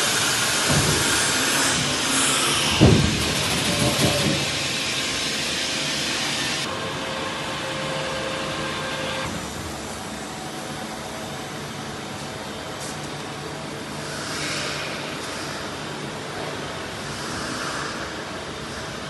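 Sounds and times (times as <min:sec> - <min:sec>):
machine mechanical hum: 0:00.0 - 0:19.0.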